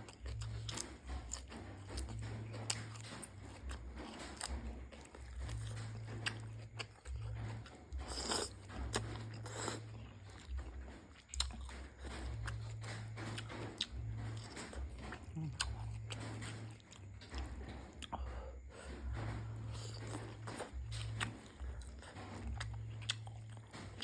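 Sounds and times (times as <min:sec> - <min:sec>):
chewing with sharp clicks: 0:00.0 - 0:24.0.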